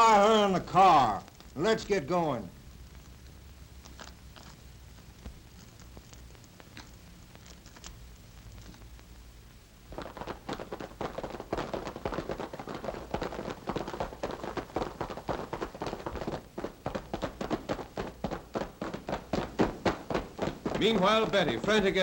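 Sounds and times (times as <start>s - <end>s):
faint low hum: 0.0s - 22.0s
galloping horse hoofbeats: 9.9s - 22.0s.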